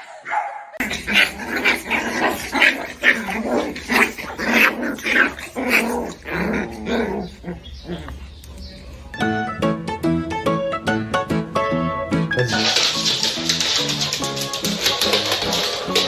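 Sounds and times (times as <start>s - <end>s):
dog growling: 0.8s - 9.1s.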